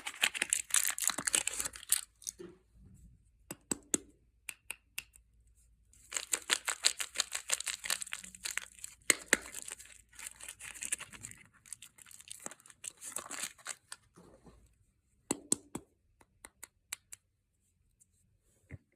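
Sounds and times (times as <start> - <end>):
crisp clicks and crackles: 0.0 - 2.4, 6.0 - 14.1
wrapper crinkling: 0.0 - 2.4, 6.0 - 14.1.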